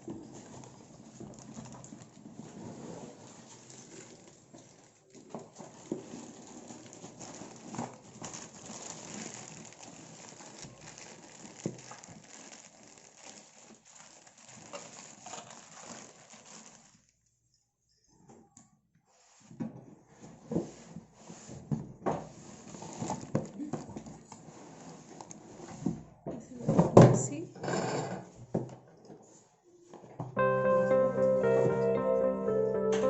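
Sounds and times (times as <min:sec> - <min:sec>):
packaging rustling: 0:00.1 - 0:17.2, 0:22.4 - 0:25.5.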